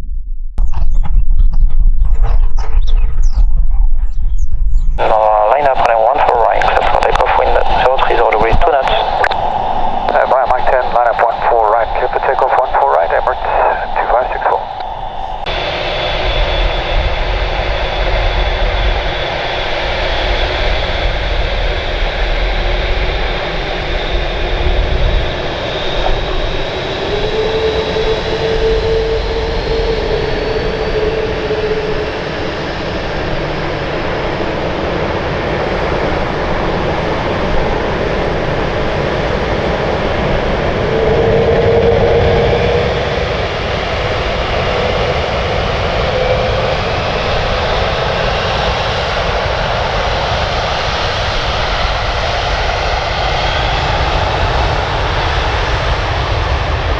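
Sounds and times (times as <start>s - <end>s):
faint high whine: 5.0s - 34.8s
jet engines roaring: 5.0s - 56.9s.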